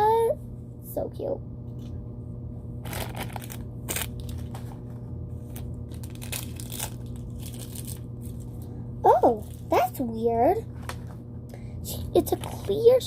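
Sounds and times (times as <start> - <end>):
steady low hum: 0.0 - 13.0
plastic wrapper crinkling: 2.8 - 8.7, 9.4 - 9.8, 12.2 - 12.9.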